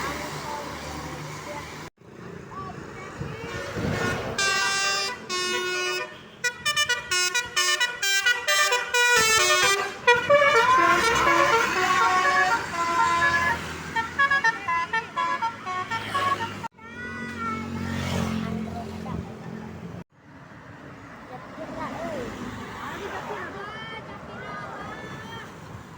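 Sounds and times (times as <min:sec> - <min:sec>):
bus musical horn melody: 0:03.5 - 0:16.7.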